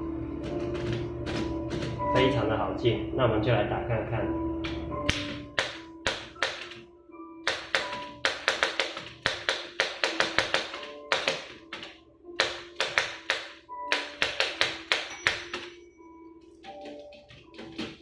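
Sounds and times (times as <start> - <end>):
manual typewriter typing: 0.4 - 2.4, 5.1 - 6.8, 7.4 - 15.8, 16.6 - 18.0.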